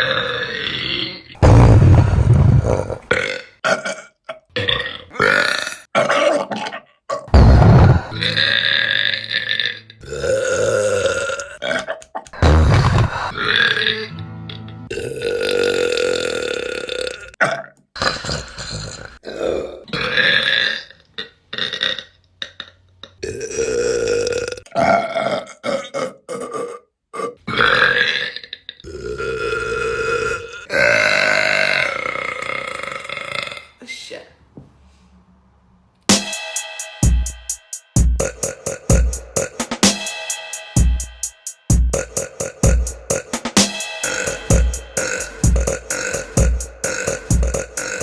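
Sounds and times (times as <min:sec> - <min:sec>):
woman burping: 0:05.0 - 0:06.8.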